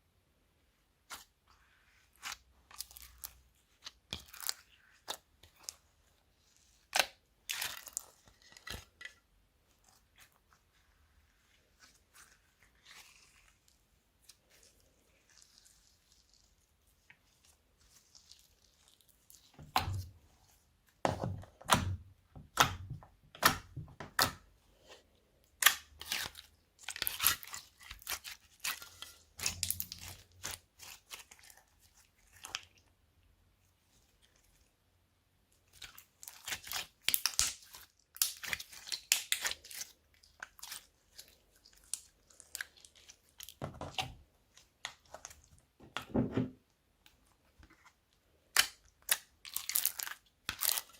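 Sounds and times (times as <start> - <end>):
slime squishing and crackling: 1.1 - 9.1, 9.7 - 20.5, 25.5 - 32.9, 35.7 - 45.8, 48.5 - 50.9.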